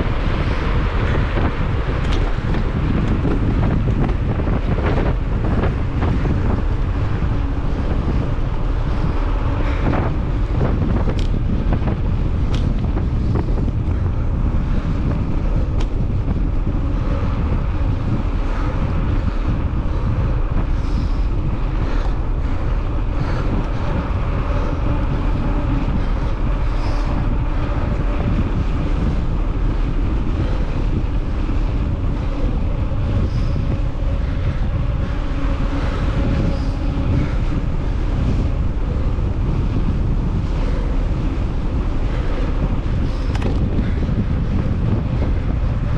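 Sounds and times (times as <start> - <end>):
wind buffeting microphone: 0.0 - 45.9.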